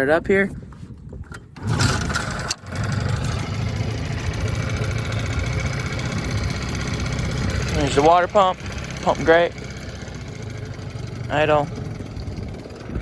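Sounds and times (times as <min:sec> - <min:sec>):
outboard motor starting and running: 0:00.5 - 0:13.0.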